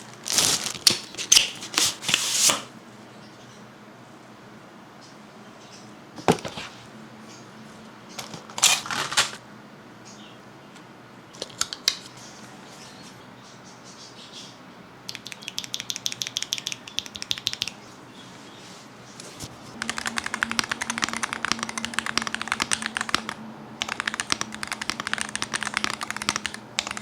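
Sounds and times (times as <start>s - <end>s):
packaging rustling: 0.0s - 2.7s, 8.4s - 9.4s
rapid keyboard typing: 15.1s - 17.8s, 19.7s - 27.0s.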